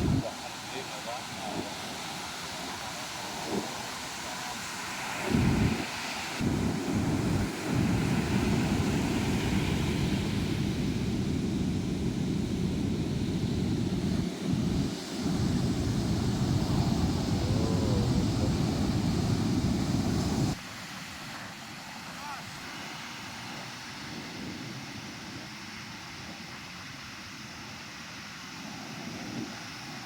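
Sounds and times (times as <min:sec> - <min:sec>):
wind buffeting microphone: 0:00.0 - 0:00.3, 0:05.2 - 0:20.6.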